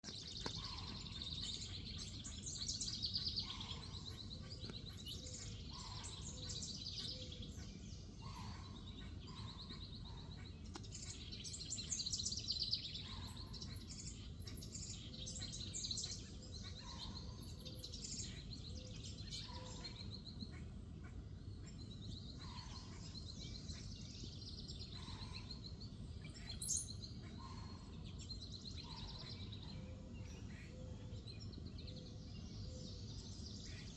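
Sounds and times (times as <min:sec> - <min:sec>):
steady background hum: 0:00.0 - 0:33.9.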